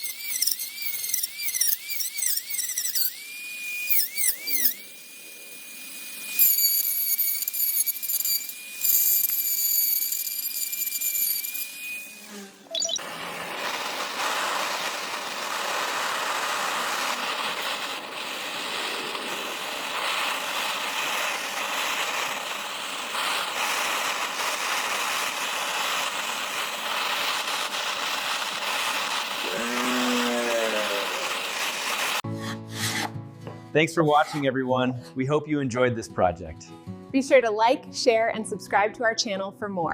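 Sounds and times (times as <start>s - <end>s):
woodworking power tool running: 0.2s - 32.2s.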